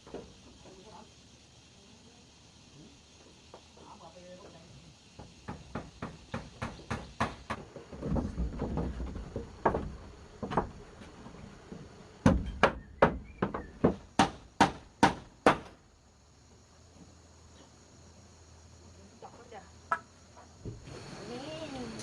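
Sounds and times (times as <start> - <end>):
sharp knocks: 5.2 - 10.8, 12.2 - 15.8.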